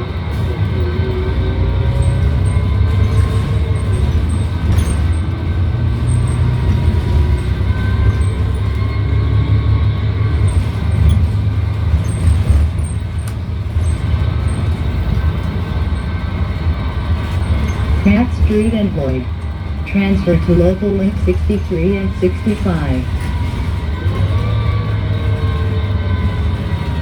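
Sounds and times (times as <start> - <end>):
bus engine rumble: 0.0 - 27.0.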